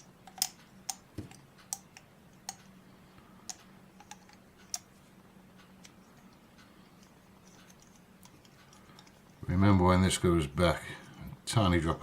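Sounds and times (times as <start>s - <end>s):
metal parts clicking: 0.0s - 2.6s
faint steady hum: 0.0s - 12.0s.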